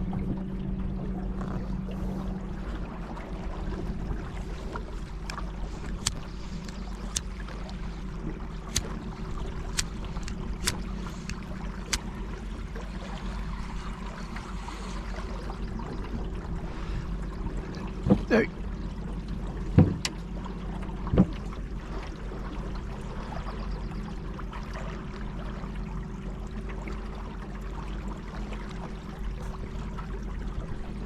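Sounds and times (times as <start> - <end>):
steady low hum: 0.0 - 31.0
water splashing: 1.3 - 23.7.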